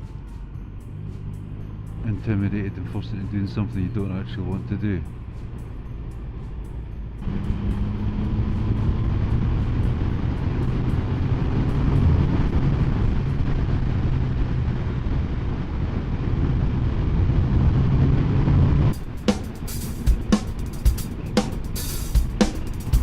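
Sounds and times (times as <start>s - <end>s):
motorcycle engine running: 0.0s - 14.7s, 18.9s - 23.0s
wind and road noise: 0.0s - 23.0s.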